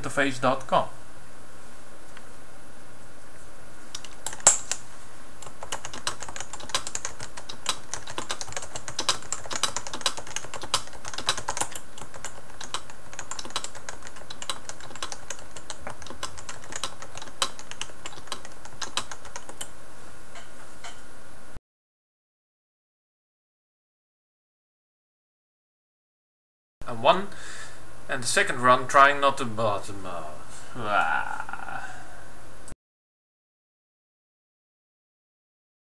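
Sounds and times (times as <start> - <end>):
fast typing on keyboard: 4.0 - 4.8, 5.4 - 19.7.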